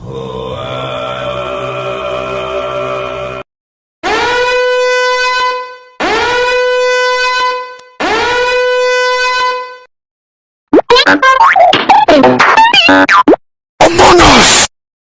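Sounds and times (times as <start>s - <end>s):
horn blasts sliding up: 4.0s - 9.9s.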